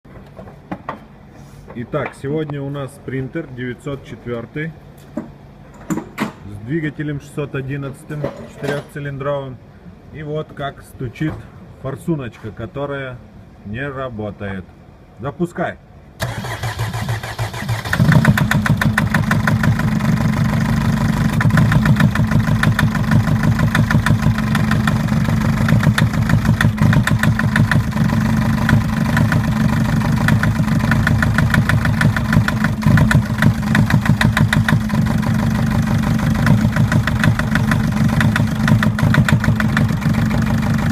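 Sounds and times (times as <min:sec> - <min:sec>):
diesel engine starting and idling: 0:16.2 - 0:40.9.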